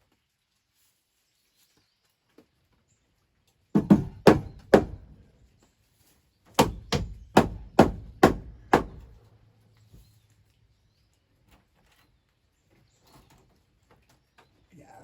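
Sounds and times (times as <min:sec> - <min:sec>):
hammer striking wood: 0:03.8 - 0:05.2, 0:06.6 - 0:09.1.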